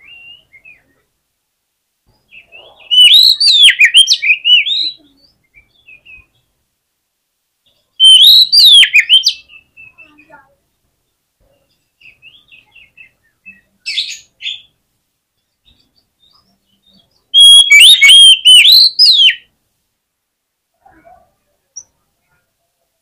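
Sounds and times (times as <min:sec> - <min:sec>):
bird singing whistled notes: 0:00.0 - 0:01.1, 0:02.2 - 0:06.5, 0:08.0 - 0:14.8, 0:15.4 - 0:19.5
soft bird chirps: 0:00.0 - 0:01.2, 0:02.0 - 0:06.6, 0:07.6 - 0:19.5, 0:20.8 - 0:22.9
harsh bird call burst: 0:17.4 - 0:19.4.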